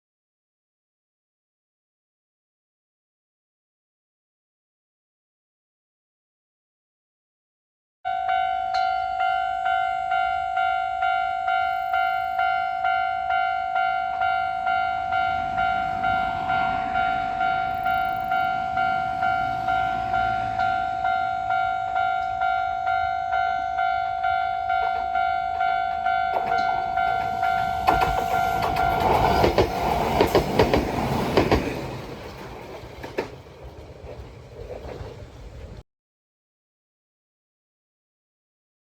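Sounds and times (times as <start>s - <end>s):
level-crossing alarm clanging: 8.1s - 31.6s
train wheels clattering: 26.0s - 35.8s.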